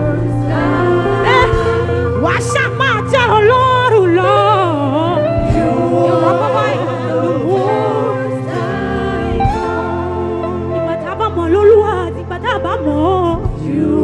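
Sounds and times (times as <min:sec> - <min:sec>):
gospel singing: 0:00.0 - 0:14.0
low keyboard tones: 0:01.1 - 0:02.2.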